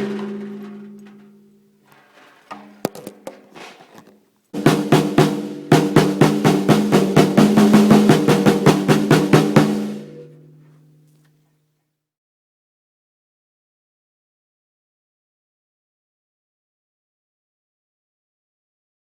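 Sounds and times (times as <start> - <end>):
snare drum roll: 4.6 - 10.4.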